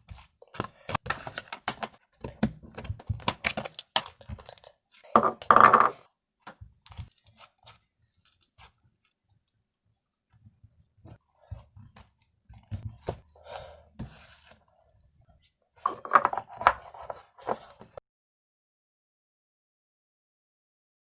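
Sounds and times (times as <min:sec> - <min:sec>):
slime squishing: 0:06.6 - 0:09.1.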